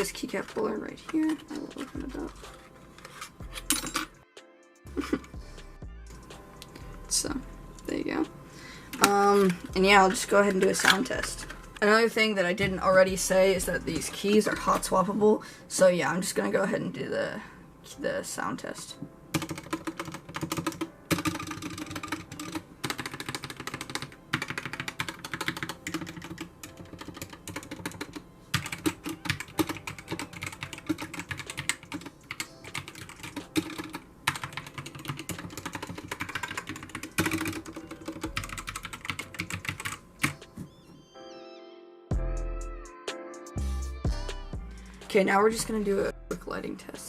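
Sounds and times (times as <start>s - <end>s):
mechanical keyboard typing: 0.0s - 3.2s, 19.3s - 40.4s.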